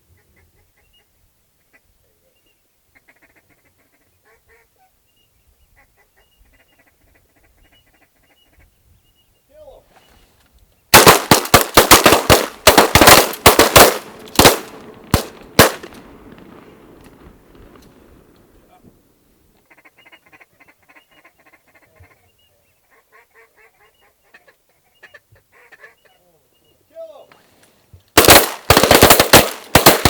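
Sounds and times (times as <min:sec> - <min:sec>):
faint duck whistling calls: 0:00.1 - 0:10.3, 0:19.6 - 0:26.9
shotgun fire: 0:10.9 - 0:16.6, 0:28.2 - 0:30.0.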